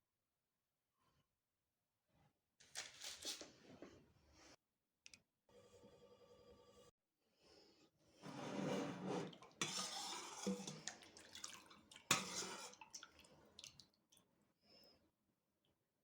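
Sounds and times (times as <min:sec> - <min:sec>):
water splashing: 0:09.3 - 0:13.9.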